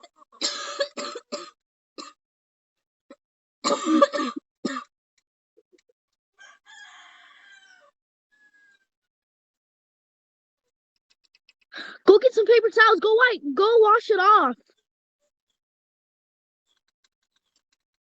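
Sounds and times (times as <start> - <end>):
harsh coughing: 0.4 - 2.1, 3.7 - 4.9.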